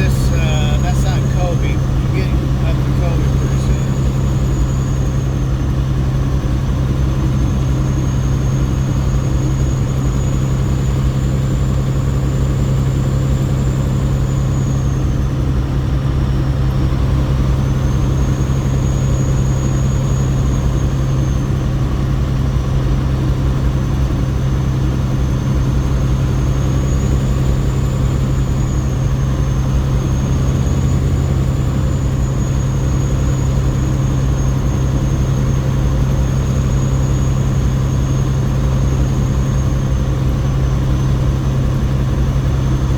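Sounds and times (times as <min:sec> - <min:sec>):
high whine: 0:00.0 - 0:15.5
diesel truck engine humming: 0:00.0 - 0:42.9.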